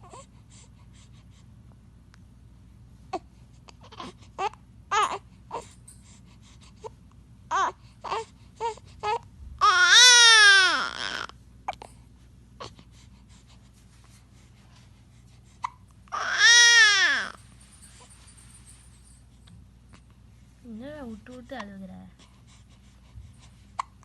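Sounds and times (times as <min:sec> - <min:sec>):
baby crying: 0:07.5 - 0:11.3, 0:16.1 - 0:17.4.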